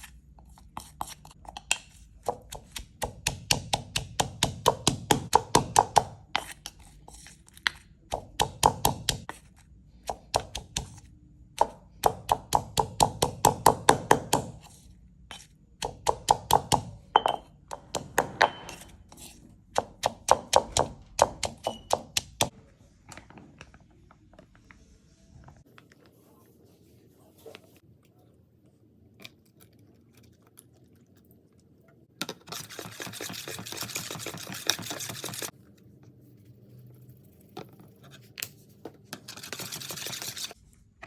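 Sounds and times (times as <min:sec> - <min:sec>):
knife chopping on cutting board: 0:00.8 - 0:06.8, 0:15.3 - 0:22.5.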